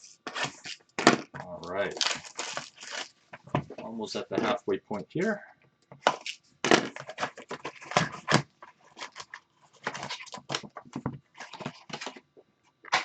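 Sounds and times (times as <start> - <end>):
foil card packs crinkling and tearing: 0.2 - 3.2, 6.0 - 12.2.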